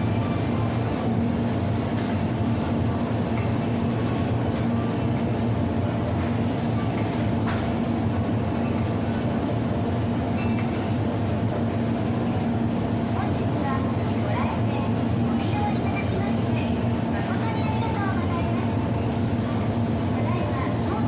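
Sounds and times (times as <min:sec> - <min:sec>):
shop-floor din: 0:00.0 - 0:21.0
ventilation hum: 0:00.0 - 0:21.0.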